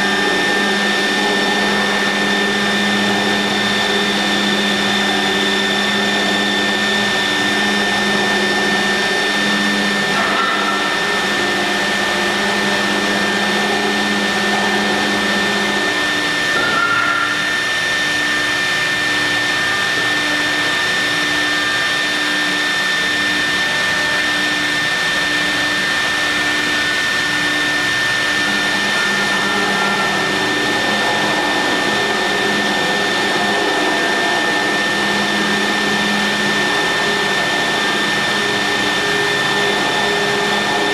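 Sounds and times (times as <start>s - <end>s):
router spindle whine: 0.0s - 40.9s.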